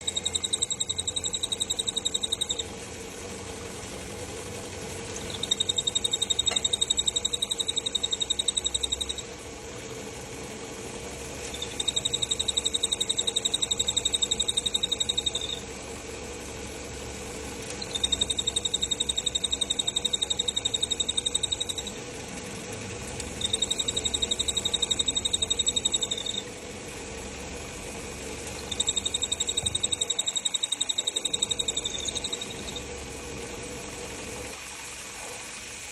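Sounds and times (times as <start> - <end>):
clutch cylinder squealing: 0.0 - 2.8, 5.1 - 9.3, 11.4 - 15.7, 17.6 - 22.1, 23.0 - 26.6, 28.4 - 33.0.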